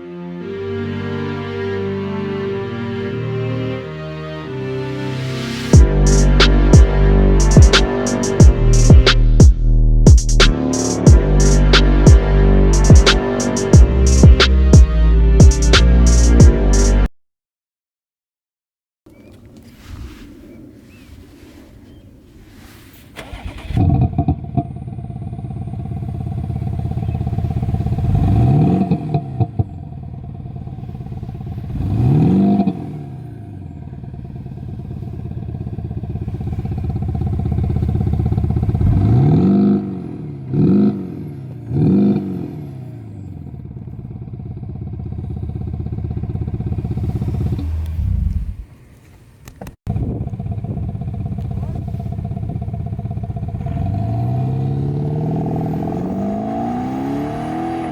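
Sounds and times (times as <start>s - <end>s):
synthetic engine idling and revving: 5.5s - 17.1s, 23.2s - 48.8s, 50.0s - 57.9s.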